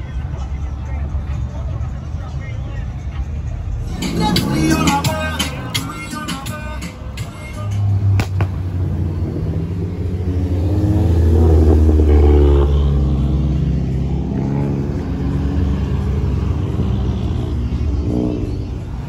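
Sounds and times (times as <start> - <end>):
car engine revving: 3.8 - 19.0.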